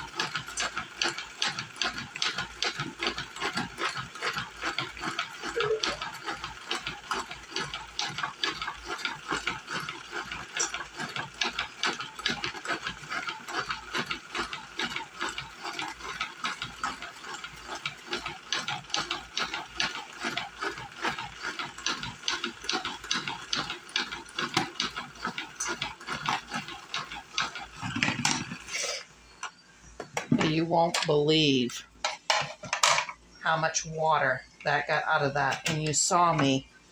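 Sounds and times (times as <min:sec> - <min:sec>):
salad spinner ratchet clicking: 0:00.0 - 0:28.8.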